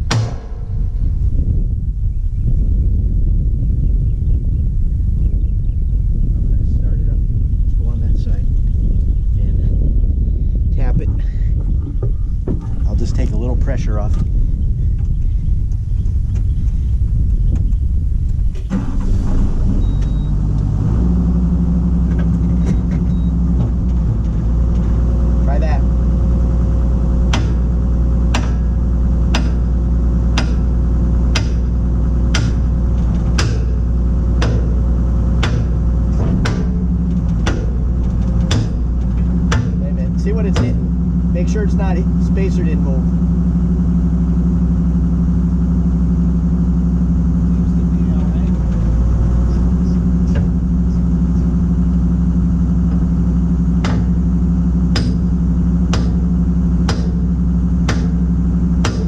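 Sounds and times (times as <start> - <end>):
hammer striking metal: 0.0 - 0.8, 27.3 - 27.7, 28.3 - 28.7, 29.3 - 29.7, 30.4 - 30.7, 31.3 - 31.7, 32.3 - 32.7, 33.3 - 33.8, 34.4 - 34.8, 35.4 - 37.8, 38.4 - 38.9, 53.8 - 54.2, 54.9 - 58.2
diesel engine running: 0.0 - 59.0.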